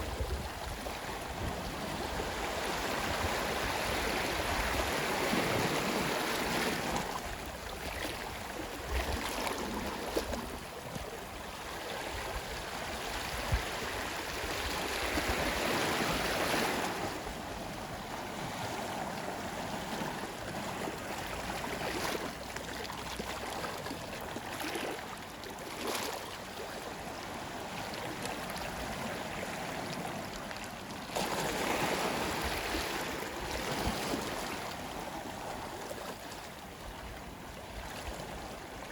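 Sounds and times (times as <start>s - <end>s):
sea waves washing onto shore: 0.0s - 25.8s.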